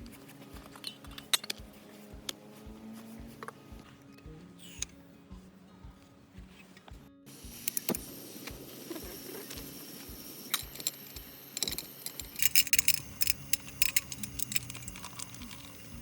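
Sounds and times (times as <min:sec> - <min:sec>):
small hard objects clicking: 0:07.5 - 0:16.0.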